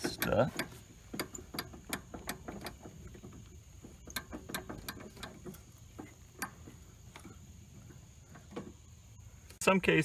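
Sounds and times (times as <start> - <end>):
locking pin clicks and knocks: 0.0 - 7.3.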